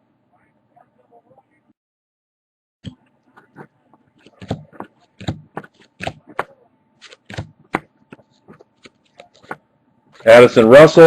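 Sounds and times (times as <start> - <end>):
trading cards clicking and snapping: 4.2 - 9.6.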